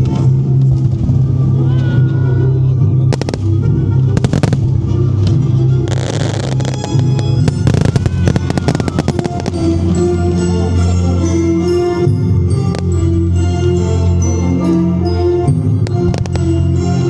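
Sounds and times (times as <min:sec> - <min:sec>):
low-pitched music: 0:02.8 - 0:17.0
fireworks bangs: 0:03.1 - 0:04.8, 0:05.9 - 0:09.8
fireworks crackling: 0:03.1 - 0:04.9, 0:05.8 - 0:10.1, 0:15.9 - 0:16.5.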